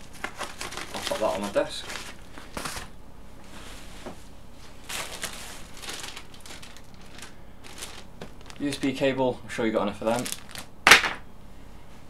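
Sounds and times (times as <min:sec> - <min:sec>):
plastic packaging crinkling: 0:00.0 - 0:03.0, 0:04.8 - 0:11.2.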